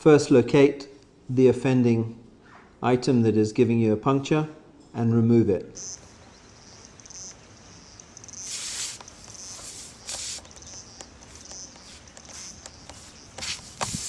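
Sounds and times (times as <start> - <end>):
air hissing from tyre: 8.3 - 14.0.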